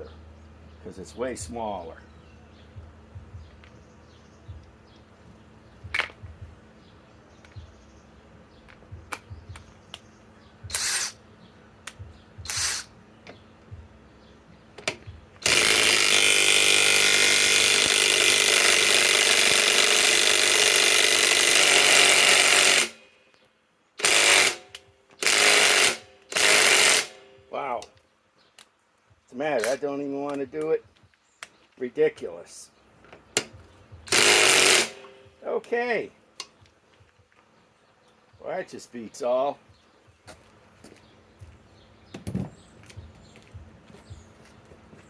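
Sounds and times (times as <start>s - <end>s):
tool handling clicks: 5.8s - 6.3s
impact wrench hammering: 5.8s - 6.6s, 10.6s - 11.2s, 11.9s - 12.9s, 14.8s - 23.0s, 24.0s - 27.5s, 33.4s - 35.4s.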